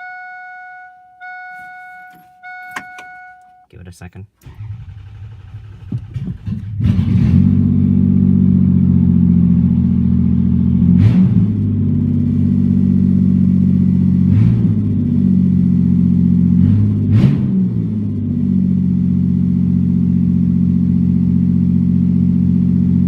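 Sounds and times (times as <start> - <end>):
car engine catching: 1.0 - 3.7, 4.4 - 15.6
car engine fast idle: 4.4 - 6.8.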